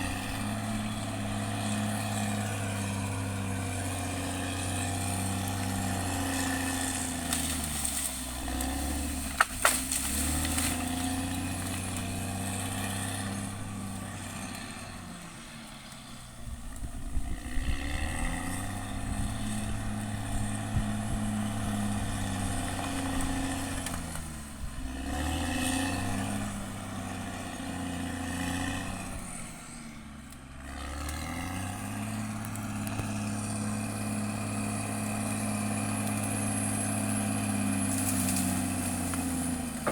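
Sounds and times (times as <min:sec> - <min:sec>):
bulldozer diesel engine under load: 0:00.0 - 0:39.9
sharp crack: 0:06.7 - 0:12.7.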